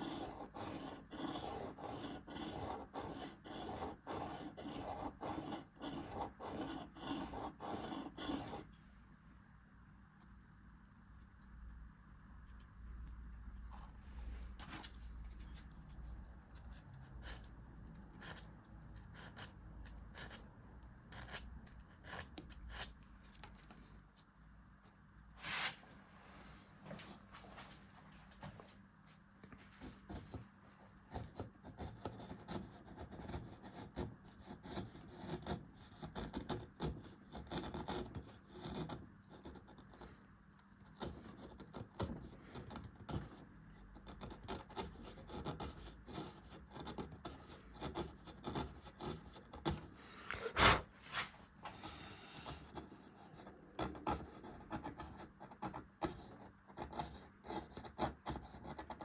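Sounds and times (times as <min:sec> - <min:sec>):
carving tool scraping wood: 0:00.0 - 0:08.7, 0:18.2 - 0:23.0, 0:31.4 - 0:39.9, 0:41.0 - 0:51.3.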